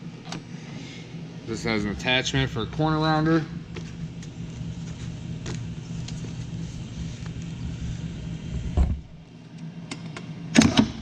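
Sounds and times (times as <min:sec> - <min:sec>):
electric hum of crimper: 0:01.2 - 0:11.0
low thump: 0:08.7 - 0:09.2.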